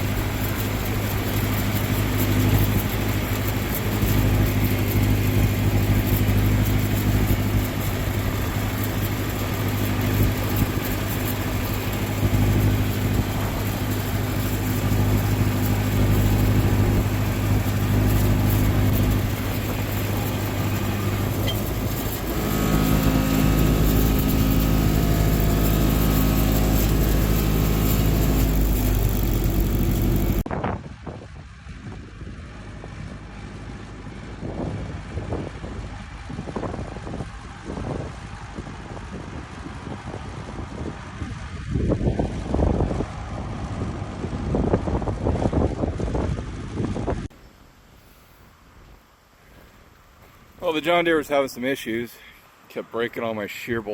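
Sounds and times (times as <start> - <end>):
tractor engine running: 0.0 - 30.5
wind noise on microphone: 0.0 - 47.4.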